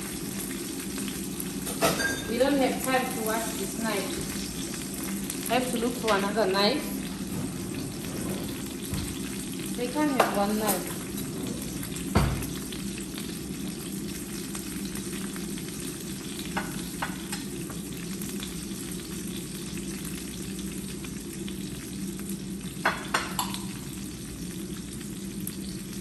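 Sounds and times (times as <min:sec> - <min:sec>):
chicken frying in hot oil: 0:00.0 - 0:26.0
knock: 0:12.1 - 0:12.5.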